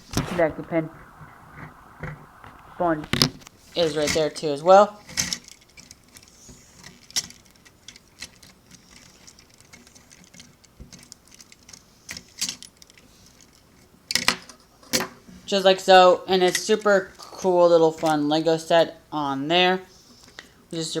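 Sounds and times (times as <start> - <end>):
plastic bricks clicking and rattling: 5.0 - 15.1.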